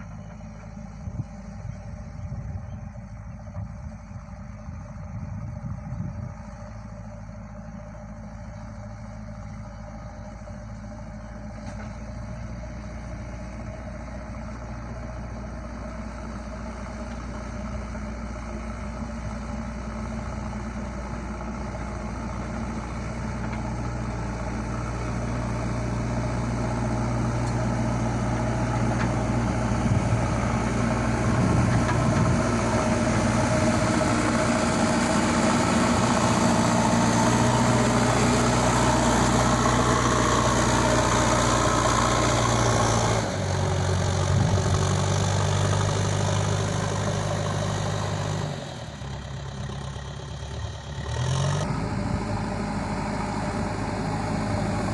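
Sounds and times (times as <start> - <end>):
diesel engine running: 0.0 - 54.9.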